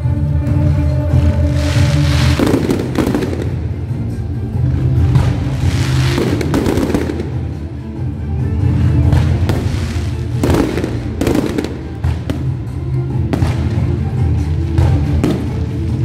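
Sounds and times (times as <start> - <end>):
music with low sustained notes: 0.0 - 16.0
fireworks bursting and crackling: 1.2 - 7.7, 9.0 - 16.0.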